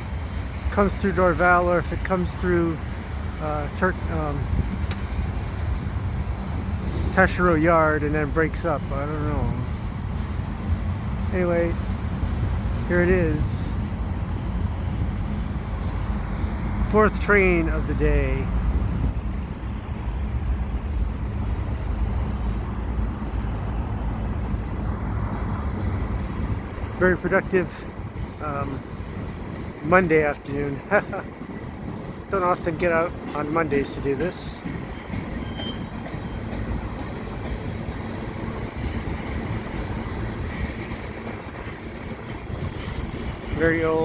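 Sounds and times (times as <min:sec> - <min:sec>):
train wheels rumbling on rail: 0:00.0 - 0:44.0
faint wheel squeal: 0:35.3 - 0:36.0, 0:40.5 - 0:40.9.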